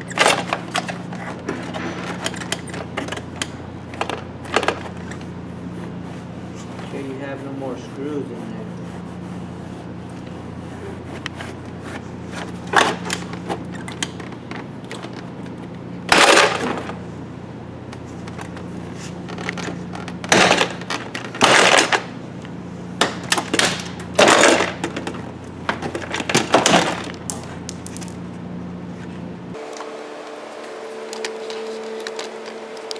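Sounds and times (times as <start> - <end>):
steady low hum: 0.0 - 32.9
plastic clips snapping: 31.0 - 32.9.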